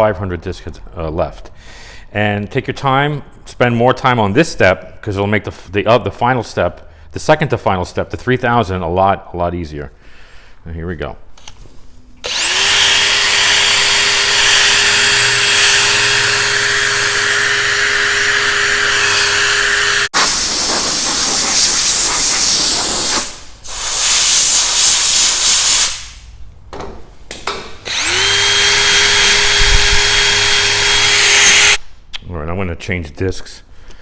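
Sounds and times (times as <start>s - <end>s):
drill motor whine: 12.2s - 20.7s, 27.9s - 31.8s
sanding hiss: 20.2s - 26.2s.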